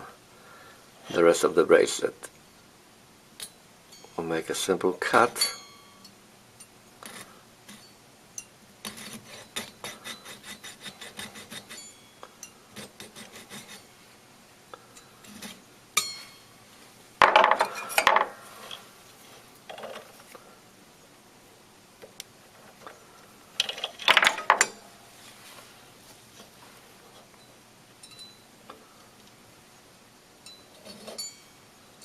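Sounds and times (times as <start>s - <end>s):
metal tools scraping: 5.0s - 13.9s, 14.9s - 16.6s, 17.2s - 18.9s, 30.5s - 31.6s
metallic clinks: 5.4s - 6.8s, 27.4s - 28.5s, 30.4s - 32.0s.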